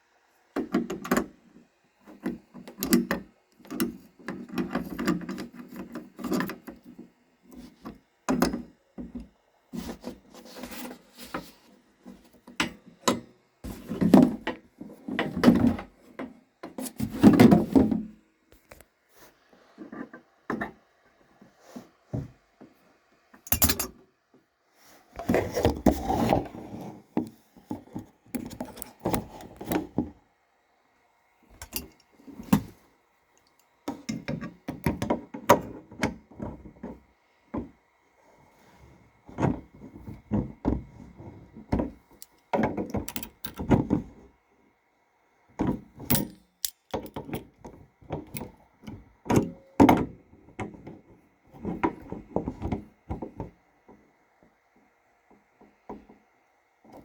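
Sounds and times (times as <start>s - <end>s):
wrench clinking on metal: 23.5s - 23.9s, 31.6s - 32.1s, 46.1s - 47.2s.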